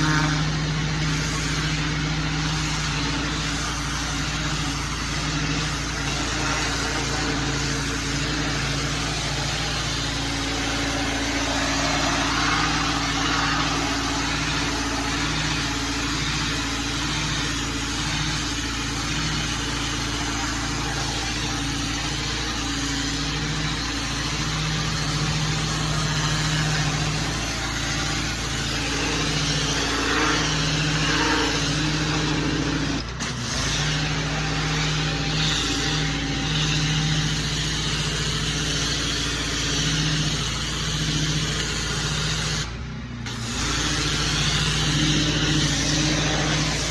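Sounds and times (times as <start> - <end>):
loud rushing hiss: 0.0 - 32.9, 43.4 - 46.9
small petrol engine running: 0.0 - 46.9.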